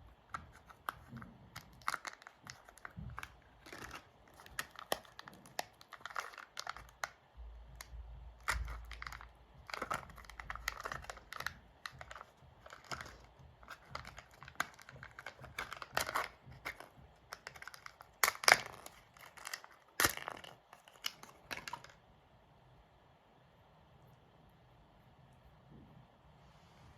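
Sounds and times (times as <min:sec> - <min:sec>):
plastic capsule clicks: 0:00.1 - 0:07.2, 0:07.8 - 0:22.0
wrapper crinkling and tearing: 0:00.6 - 0:07.2, 0:07.8 - 0:22.0.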